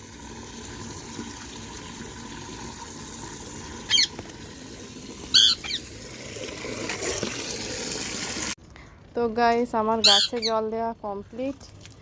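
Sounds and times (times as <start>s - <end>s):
parrot calling: 3.9s - 4.1s, 5.3s - 5.9s, 10.0s - 10.6s.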